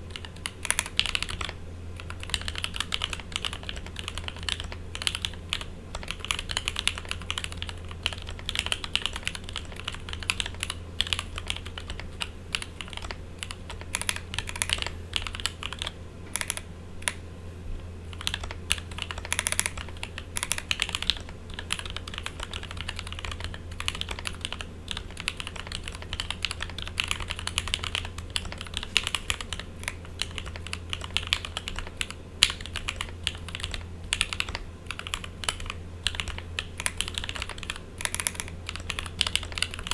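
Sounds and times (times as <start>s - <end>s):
mechanical keyboard typing: 0.0s - 17.2s, 18.1s - 39.9s
steady low buzz: 0.0s - 39.9s.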